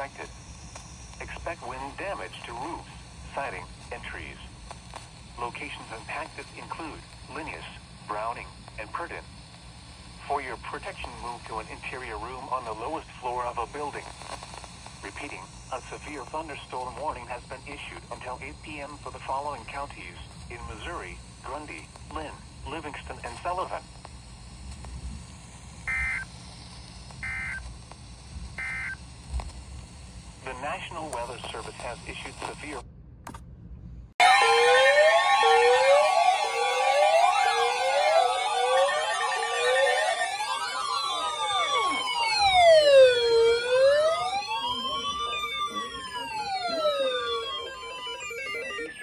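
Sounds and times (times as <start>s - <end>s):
buzzy digital data bursts: 0.0s - 32.7s, 34.2s - 49.0s
other siren tones: 25.9s - 26.2s, 27.2s - 27.6s, 28.6s - 29.0s, 34.2s - 49.0s
wailing siren: 34.2s - 49.0s.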